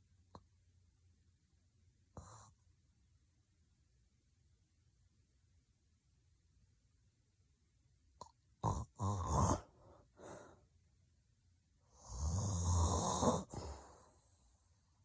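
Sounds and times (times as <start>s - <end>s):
woman snoring: 8.6s - 9.7s, 11.9s - 14.2s.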